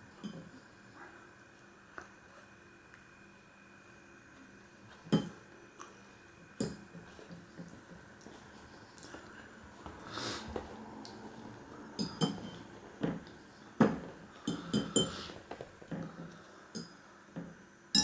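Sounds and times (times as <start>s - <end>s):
utensils clinking against dish: 12.0s - 12.7s, 14.4s - 15.4s.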